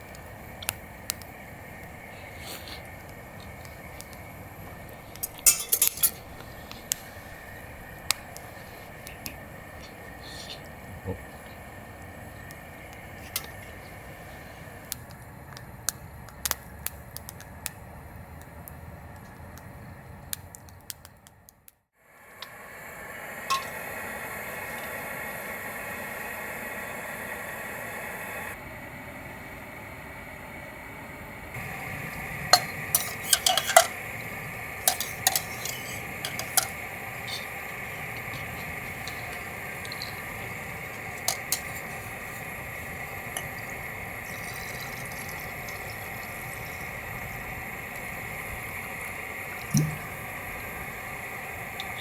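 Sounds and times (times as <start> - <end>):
steady hiss: 0.0 - 21.4, 22.0 - 52.0
metal and glass utensils clinking: 2.8 - 11.7, 13.0 - 14.0, 23.5 - 23.8, 32.1 - 47.2.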